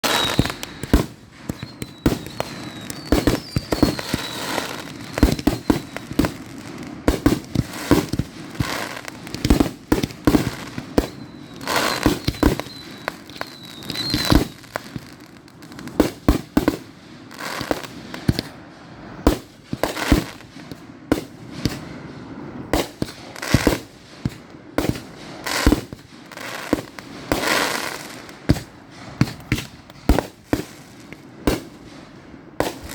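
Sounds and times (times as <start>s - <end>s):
firework whistle: 0.0s - 15.2s
fireworks bangs and pops: 0.0s - 32.9s.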